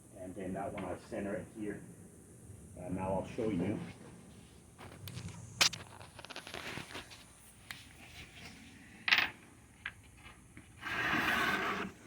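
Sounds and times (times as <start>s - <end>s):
short scrape: 10.8s - 12.0s.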